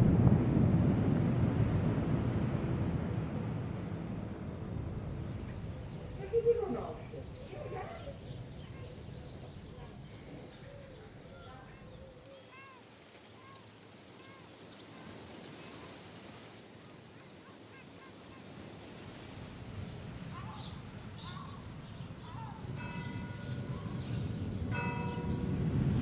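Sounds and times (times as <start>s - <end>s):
low rumble: 0.0s - 6.4s
birds chirping: 4.8s - 26.0s.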